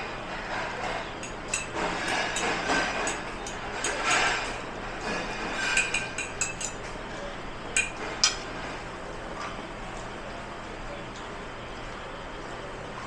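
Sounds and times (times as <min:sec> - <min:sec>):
steady background hum: 0:00.0 - 0:13.0
dishes and cutlery clattering: 0:01.2 - 0:07.0, 0:07.8 - 0:08.5.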